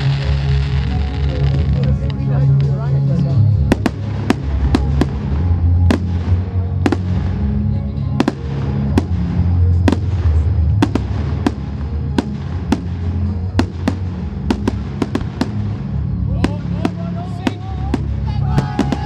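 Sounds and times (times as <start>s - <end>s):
steady low rumble: 0.0s - 19.0s
fireworks bangs: 3.6s - 7.5s, 8.2s - 19.0s.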